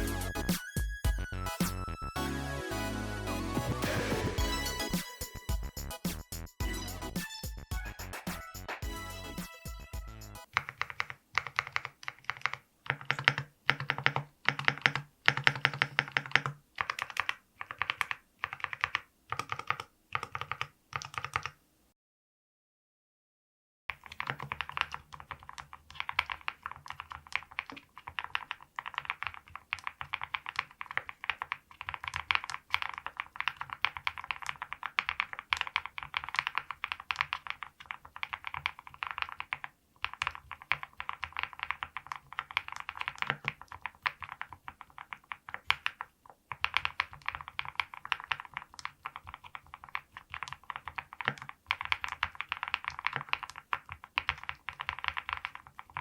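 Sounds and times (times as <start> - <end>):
mechanical keyboard typing: 10.4 - 21.6, 23.9 - 56.0.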